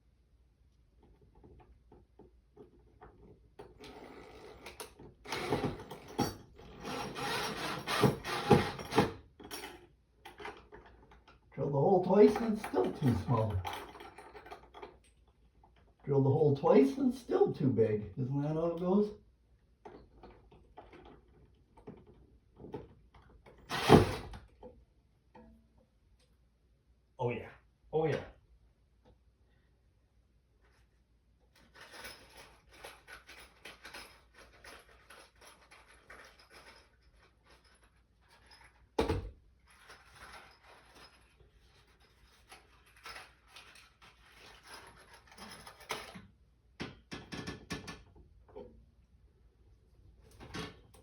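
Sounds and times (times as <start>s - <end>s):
power drill boring: 5.3s - 6.0s, 6.7s - 9.1s, 23.7s - 24.3s.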